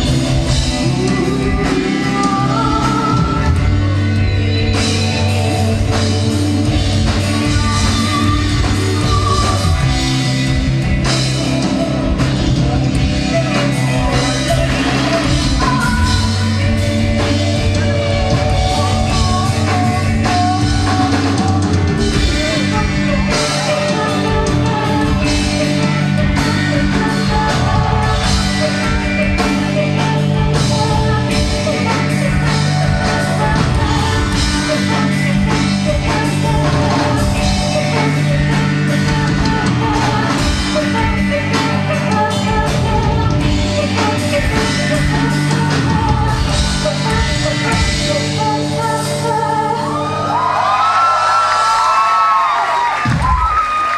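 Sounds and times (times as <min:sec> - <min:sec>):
person singing: 0:00.0 - 0:50.6
live rock band playing: 0:00.0 - 0:53.9.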